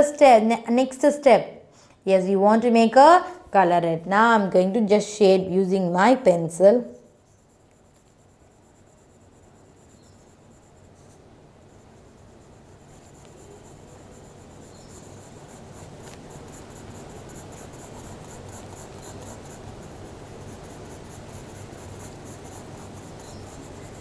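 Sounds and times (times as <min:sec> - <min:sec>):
low steady hum: 0:00.0 - 0:24.0
pencil scratching on paper: 0:06.8 - 0:24.0.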